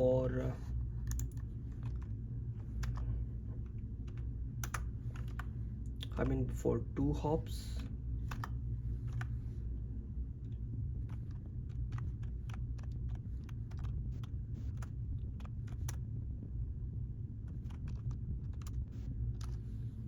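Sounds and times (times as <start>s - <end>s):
steady low hum: 0.0s - 20.0s
computer keyboard typing: 1.0s - 6.4s, 7.8s - 9.3s, 10.4s - 16.0s, 17.4s - 19.6s.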